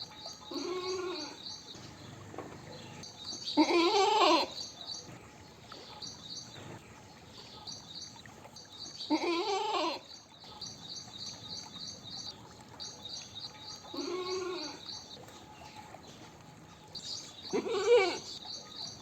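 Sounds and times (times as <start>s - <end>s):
goat bleating: 0.5s - 1.4s, 3.6s - 4.6s, 9.1s - 10.0s, 13.9s - 14.8s, 17.5s - 18.3s.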